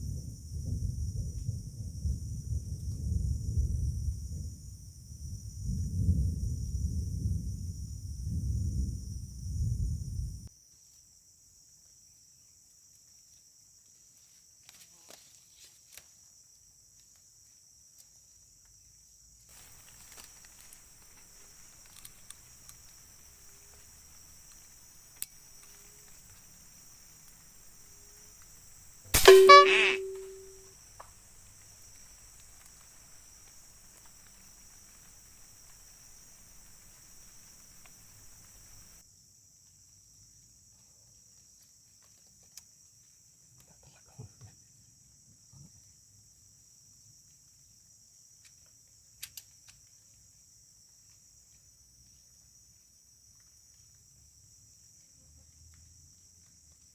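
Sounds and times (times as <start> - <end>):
high-pitched insect chorus: 0.0 - 56.9
soft hiss: 19.4 - 39.0
small ticks and taps: 19.6 - 26.5, 31.0 - 35.9, 41.4 - 43.8, 48.4 - 56.9
sharp click: 29.1 - 30.6.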